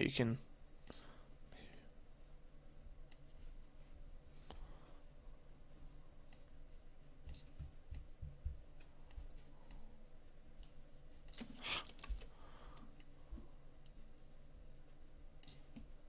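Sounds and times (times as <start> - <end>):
computer mouse clicks: 10.6 - 13.2, 15.4 - 16.0.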